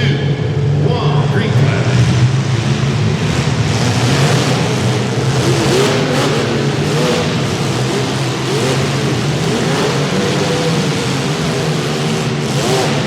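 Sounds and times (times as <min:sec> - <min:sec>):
car engines revving: 0:00.0 - 0:13.0.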